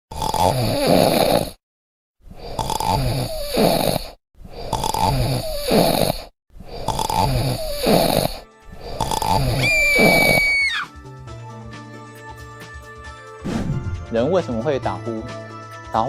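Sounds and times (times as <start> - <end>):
person snoring loudly: 0.1 - 1.6, 2.3 - 10.8.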